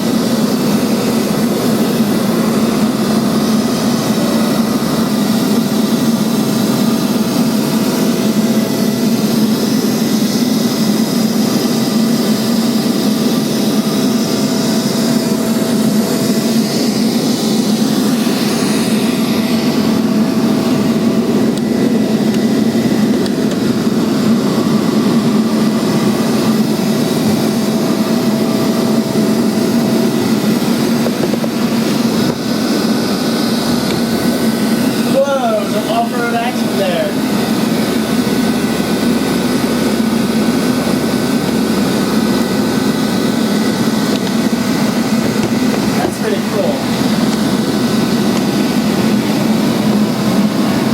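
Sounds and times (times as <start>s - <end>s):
faint steady whine: 0.0s - 50.9s
robot vacuum humming: 14.8s - 50.9s.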